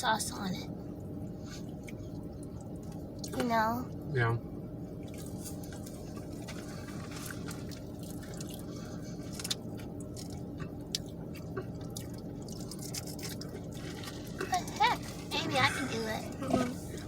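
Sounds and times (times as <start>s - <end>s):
steady low hum: 0.0s - 17.0s
person chewing wetly: 5.0s - 15.2s.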